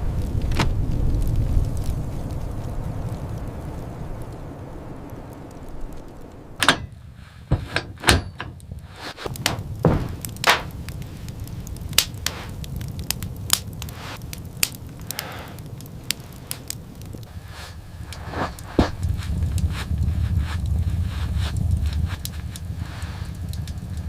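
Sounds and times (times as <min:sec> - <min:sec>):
steady low rumble: 0:00.0 - 0:24.0
irregular knocks and thuds: 0:06.6 - 0:11.0, 0:18.0 - 0:22.4.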